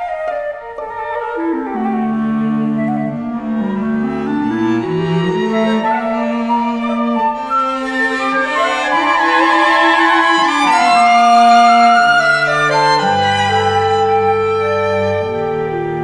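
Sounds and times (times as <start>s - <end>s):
violin melody over strings: 0.0s - 16.0s.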